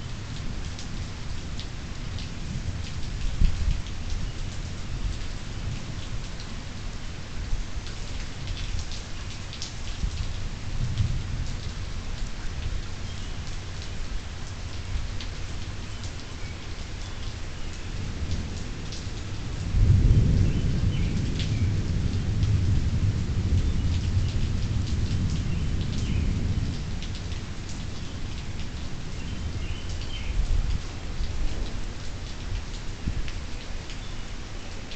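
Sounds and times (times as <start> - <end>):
steady rain falling: 0.0 - 34.9
low rumble of thunder: 0.1 - 7.9, 9.9 - 12.8, 17.9 - 33.3
raindrops ticking: 7.8 - 34.9.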